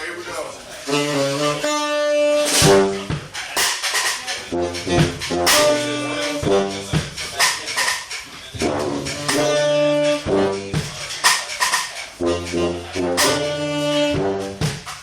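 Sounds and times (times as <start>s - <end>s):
live jazz band playing: 0.7s - 15.0s
saxophone melody: 0.8s - 3.3s, 4.5s - 7.2s, 8.6s - 11.1s, 12.2s - 14.8s
drum and cymbal hits: 0.8s - 15.0s.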